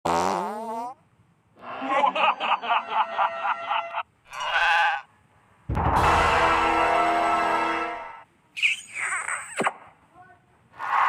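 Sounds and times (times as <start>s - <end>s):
longer sound effect: 5.7s - 8.2s
short sound effect burst: 5.7s - 8.2s.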